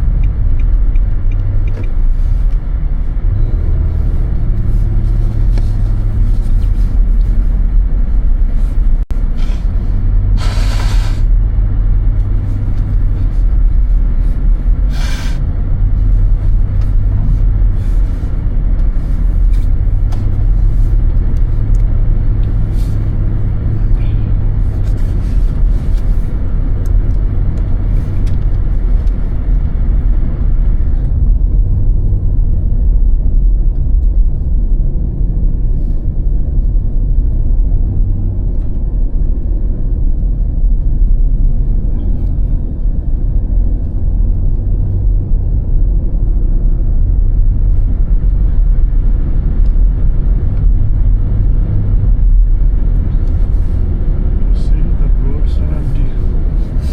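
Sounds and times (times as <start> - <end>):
car engine and tyres rumbling: 0.0 - 56.9
short hiss: 10.4 - 11.3, 14.9 - 15.4.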